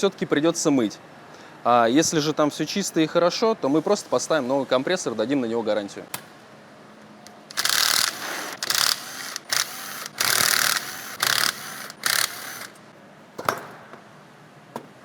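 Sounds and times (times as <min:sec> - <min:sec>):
power tool working bolts: 0:07.5 - 0:12.9.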